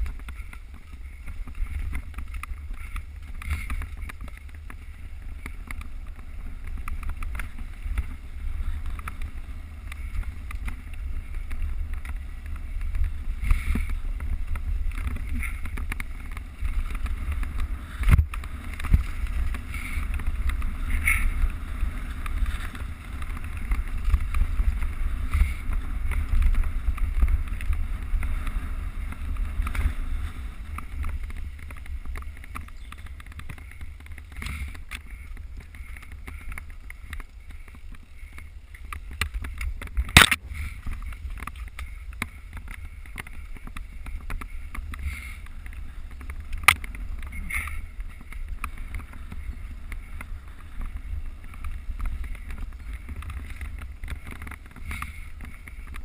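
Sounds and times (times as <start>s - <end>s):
bike rattles and knocks: 0.0s - 56.0s
wind rumble on microphone: 0.0s - 56.0s.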